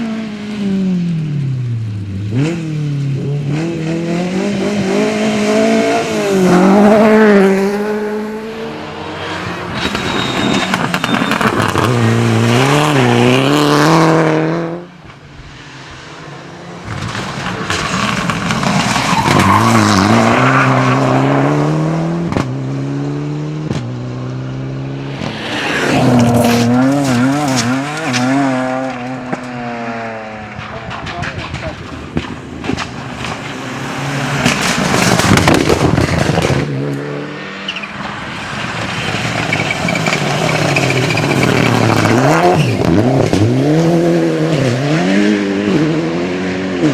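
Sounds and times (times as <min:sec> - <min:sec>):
rally car engines revving: 0:00.0 - 0:46.9
car passing: 0:00.5 - 0:46.9.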